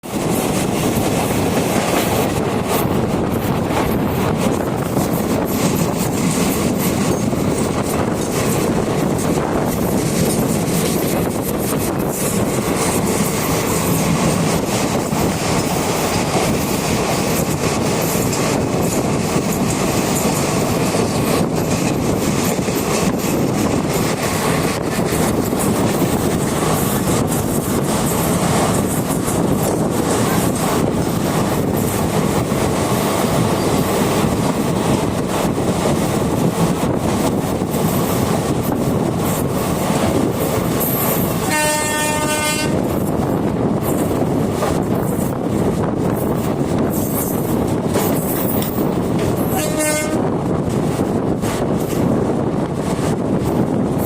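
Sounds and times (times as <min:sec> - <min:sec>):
train wheels rumbling on rail: 0:00.0 - 0:54.0
track clicks and clatter: 0:00.2 - 0:41.4.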